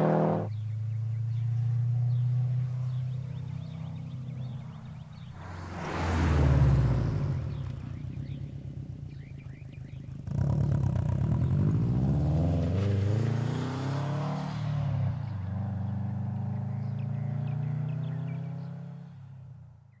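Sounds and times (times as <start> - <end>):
car engine revving: 0.0 - 0.6
car engine idling: 0.0 - 0.7.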